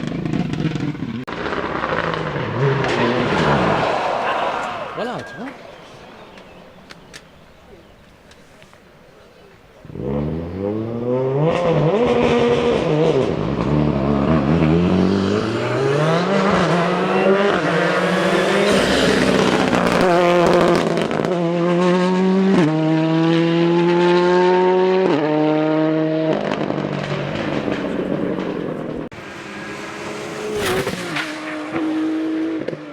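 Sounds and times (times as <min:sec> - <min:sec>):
rally car engine revving: 0:00.0 - 0:06.8, 0:09.8 - 0:32.9.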